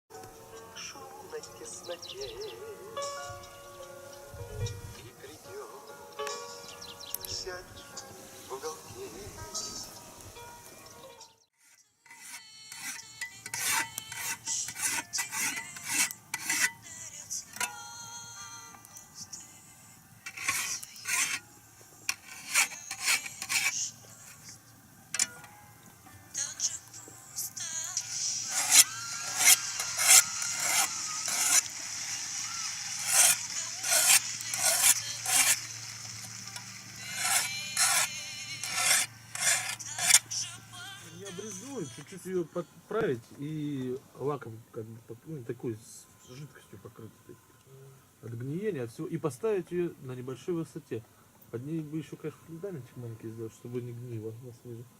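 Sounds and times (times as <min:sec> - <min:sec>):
rough rasping scraping strokes: 0:11.6 - 0:17.8, 0:20.2 - 0:25.4, 0:27.9 - 0:40.6.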